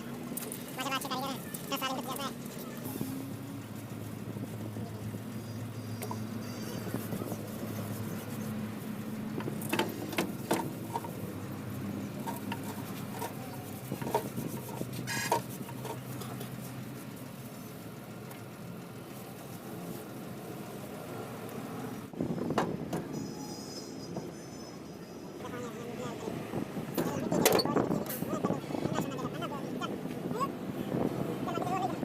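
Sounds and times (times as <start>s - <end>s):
mechanical hum: 0.0s - 31.5s
sharp knocks and clicks: 9.4s - 11.2s.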